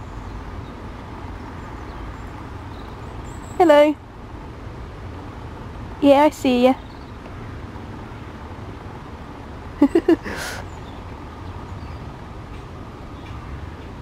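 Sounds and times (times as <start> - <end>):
breathy exhale: 10.2 - 10.7.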